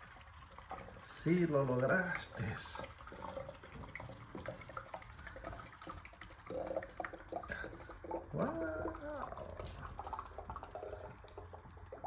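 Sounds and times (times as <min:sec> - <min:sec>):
water splashing and dripping: 0:00.0 - 0:12.0.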